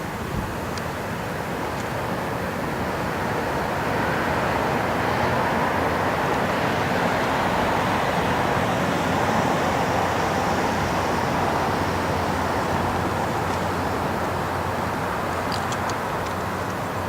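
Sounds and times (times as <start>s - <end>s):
road traffic rushing: 0.0s - 17.0s.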